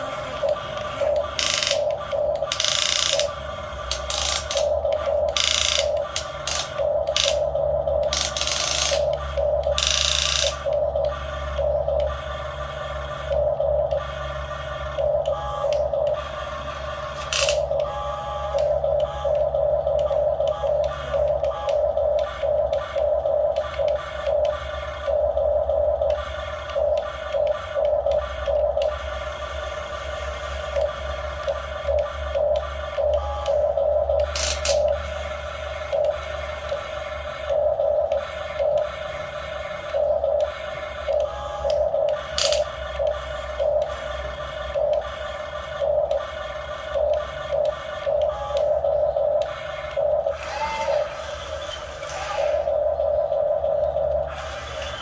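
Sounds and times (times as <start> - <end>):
small electric motor whining: 0.0 - 23.1, 50.2 - 53.0, 54.2 - 55.0
small electric motors whining: 0.0 - 55.0.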